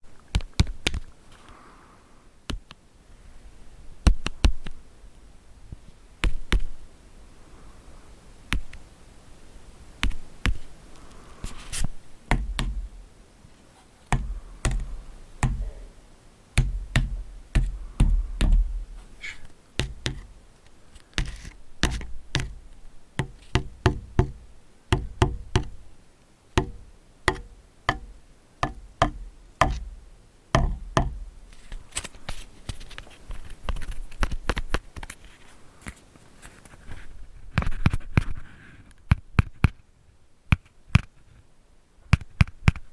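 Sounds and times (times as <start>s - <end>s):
sharp taps and knocks: 0.3s - 1.1s, 6.2s - 6.7s, 12.3s - 13.0s, 14.1s - 15.7s, 16.6s - 19.0s, 19.8s - 20.3s, 21.1s - 25.8s, 26.6s - 30.0s, 30.6s - 31.3s
low thuds: 12.3s - 13.1s, 14.1s - 16.0s, 16.6s - 19.2s, 19.8s - 20.4s, 21.2s - 25.8s, 26.6s - 31.5s.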